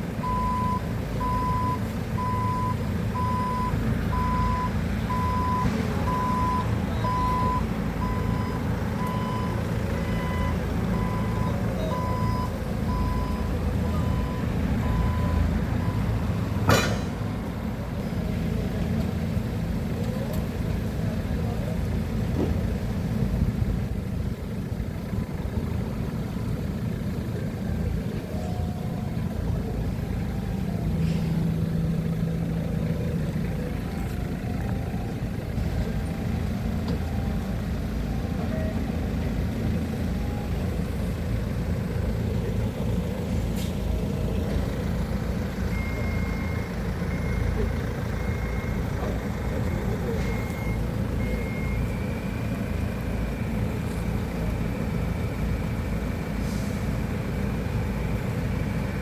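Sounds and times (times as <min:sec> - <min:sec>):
heavy equipment engine running: 0:00.0 - 0:59.0
reversing alarm beeping: 0:00.2 - 0:17.1, 0:33.4 - 0:41.0, 0:45.6 - 0:52.8.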